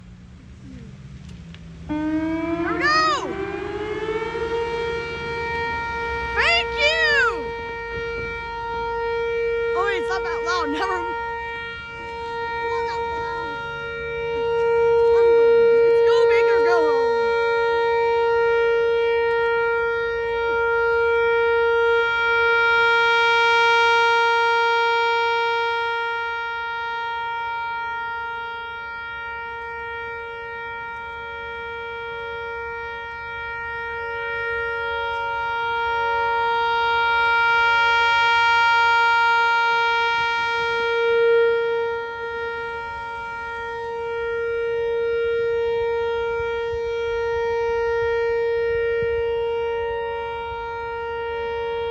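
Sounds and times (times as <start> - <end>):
warning siren steady tone: 0.0 - 51.9.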